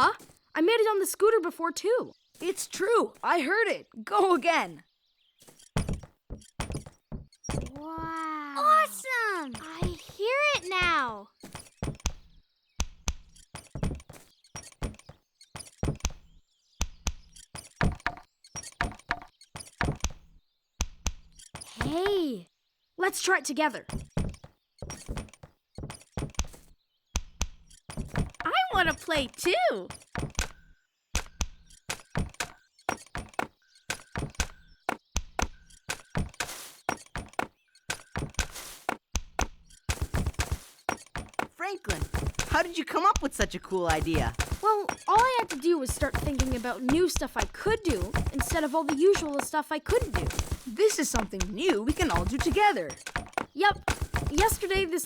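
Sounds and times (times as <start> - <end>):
leg brace clicking and knocking: 5.2 - 22.2, 23.8 - 55.0
rattling shakes: 27.6 - 55.0.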